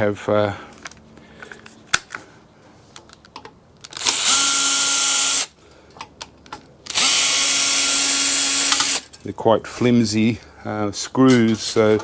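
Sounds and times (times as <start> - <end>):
power drill spinning: 3.9 - 5.6, 6.9 - 9.1.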